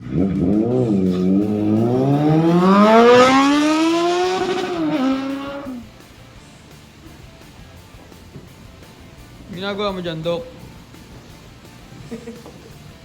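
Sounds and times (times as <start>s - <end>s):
engine revving hard: 0.0s - 6.3s.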